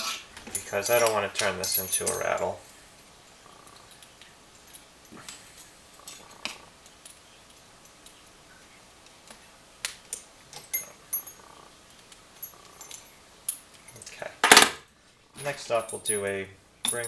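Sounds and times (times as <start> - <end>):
padlock and tools clinking: 10.1 - 11.5, 15.8 - 17.0.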